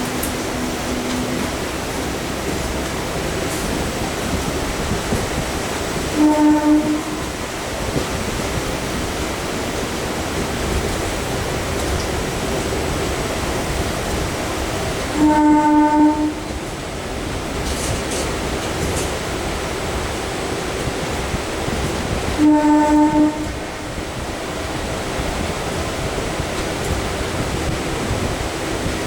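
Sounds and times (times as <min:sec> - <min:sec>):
electric train rumbling: 0:00.0 - 0:29.0
train horn blasts: 0:05.9 - 0:07.6, 0:15.0 - 0:16.6, 0:22.3 - 0:24.2.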